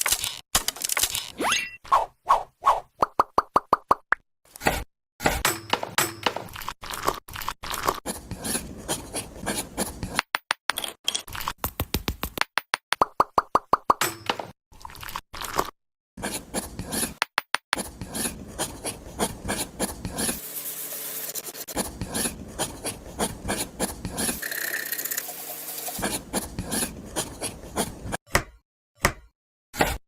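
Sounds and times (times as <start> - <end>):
rasping filing strokes: 16.2 - 17.2, 17.8 - 28.2.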